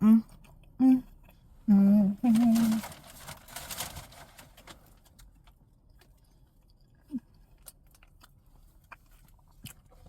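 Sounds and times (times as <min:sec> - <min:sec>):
chewing mouth clicks and smacks: 0:05.9 - 0:10.0.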